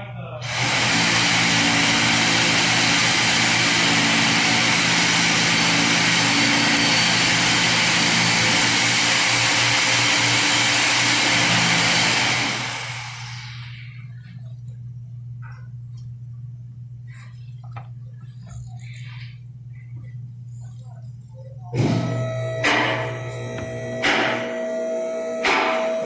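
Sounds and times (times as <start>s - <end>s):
motor-driven machine running: 0.4s - 14.6s, 21.7s - 26.0s.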